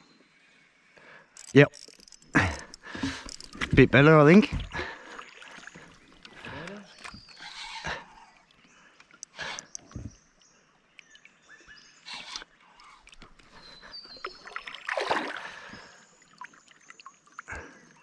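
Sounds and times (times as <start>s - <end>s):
knocks and clicks on kayak: 1.4s - 4.8s.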